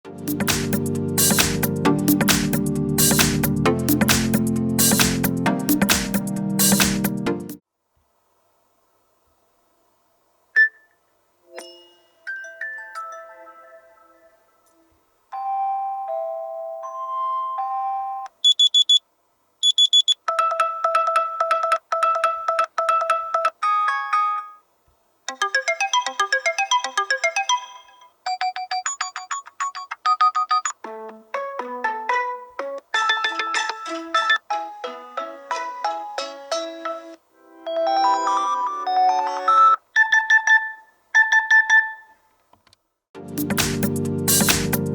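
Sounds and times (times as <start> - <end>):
electronic melody: 0.1 - 7.6, 30.7 - 42.1, 43.2 - 44.9
chiming melody: 11.5 - 14.7, 15.4 - 18.3, 36.9 - 40.8.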